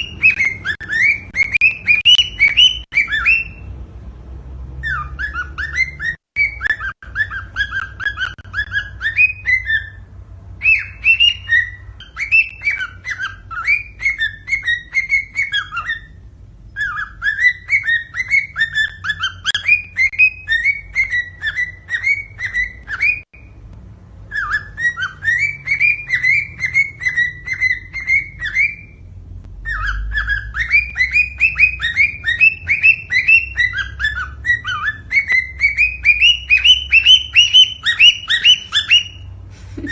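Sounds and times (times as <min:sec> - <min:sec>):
cockatiel whistling: 0:00.0 - 0:03.7, 0:04.8 - 0:23.6, 0:24.3 - 0:29.0, 0:29.6 - 0:39.9.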